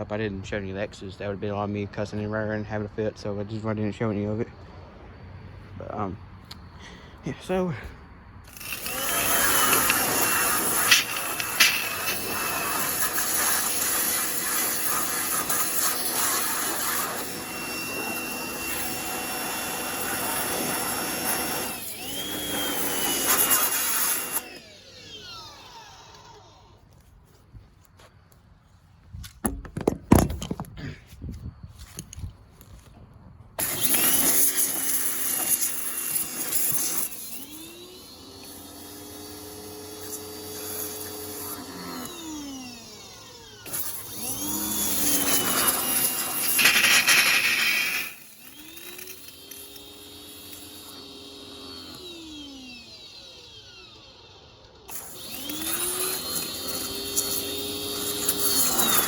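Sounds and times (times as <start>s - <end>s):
pressure washer motor whining: 8.5s - 27.1s, 33.6s - 59.0s
water jet hissing: 8.6s - 17.3s.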